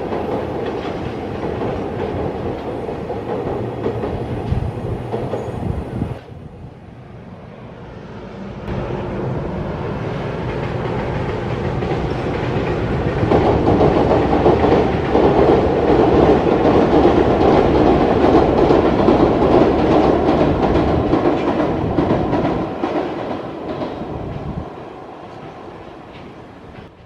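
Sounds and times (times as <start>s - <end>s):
wheels clacking over rail joints: 0.0s - 5.5s, 10.5s - 24.5s
freight train rumbling past: 0.0s - 27.0s.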